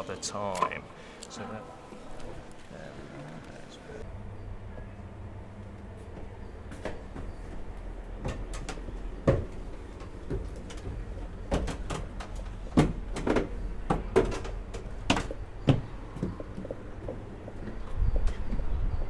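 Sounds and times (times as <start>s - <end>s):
irregular knocks and clunks: 6.7s - 18.7s.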